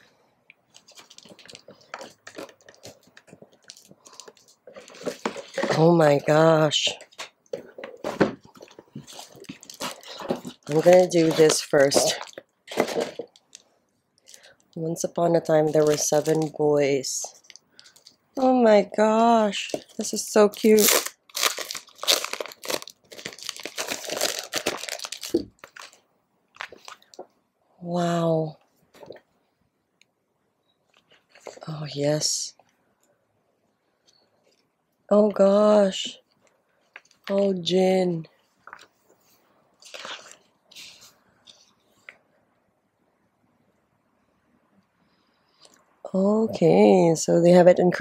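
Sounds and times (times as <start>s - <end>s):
cardboard and paper rustling: 0.7s - 13.4s, 15.6s - 16.6s, 19.6s - 26.0s, 39.8s - 41.7s.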